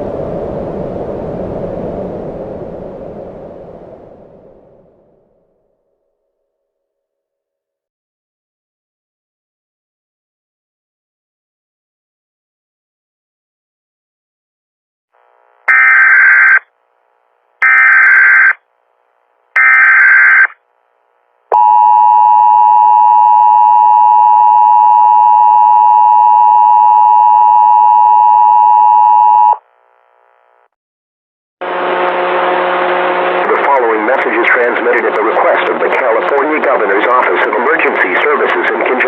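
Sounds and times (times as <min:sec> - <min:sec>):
noisy broadcast sound: 0:15.2 - 0:21.9, 0:31.6 - 0:39.0.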